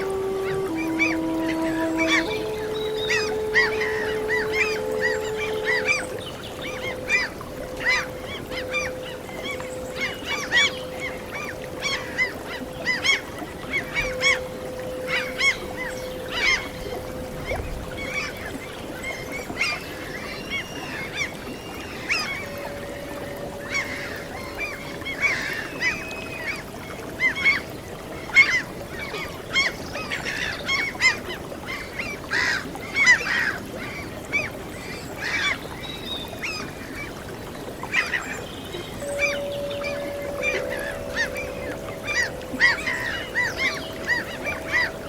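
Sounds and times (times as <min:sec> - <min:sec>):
gulls squawking: 0:00.0 - 0:21.3, 0:22.0 - 0:27.6, 0:39.0 - 0:45.0
long flute-like tone: 0:00.0 - 0:28.8, 0:39.0 - 0:45.0.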